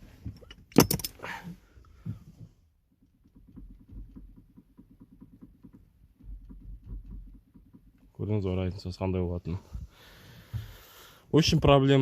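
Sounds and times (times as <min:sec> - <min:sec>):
steering knocking: 0:02.0 - 0:08.8.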